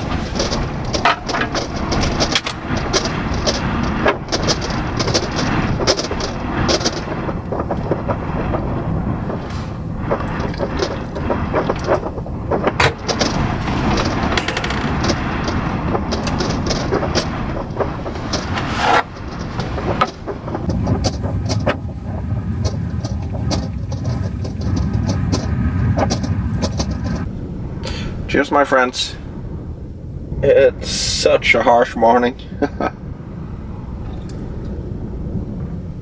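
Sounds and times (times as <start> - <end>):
sharp ticks and knocks: 0.0 - 27.3
blizzard wind gusting: 0.0 - 36.0.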